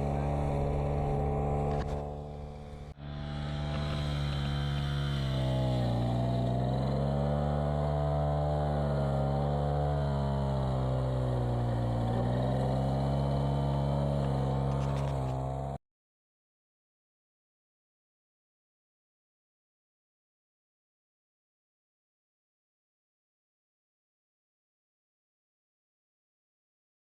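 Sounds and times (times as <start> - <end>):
brush cutter engine running: 0.0 - 15.8.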